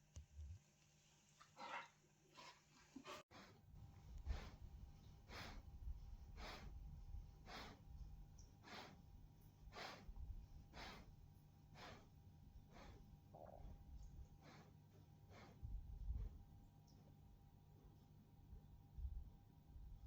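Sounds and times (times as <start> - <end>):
dog breathing quietly: 3.0 - 13.3, 14.1 - 16.4.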